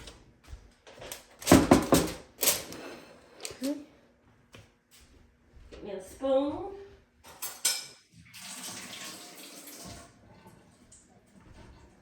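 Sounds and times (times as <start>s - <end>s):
kitchen faucet running: 8.2s - 10.2s.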